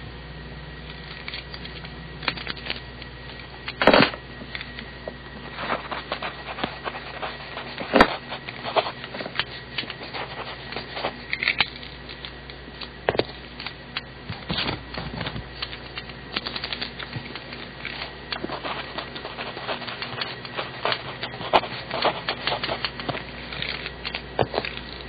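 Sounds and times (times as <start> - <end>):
low steady hum: 0.0 - 25.0
pencil scratching on paper: 18.4 - 23.1.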